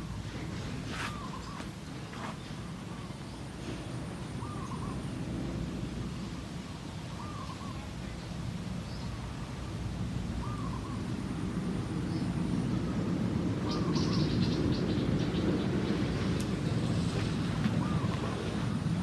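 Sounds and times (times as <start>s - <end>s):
low outdoor rumble: 0.0s - 19.0s
bird hooting call: 7.1s - 7.8s, 10.4s - 11.1s, 17.7s - 18.6s.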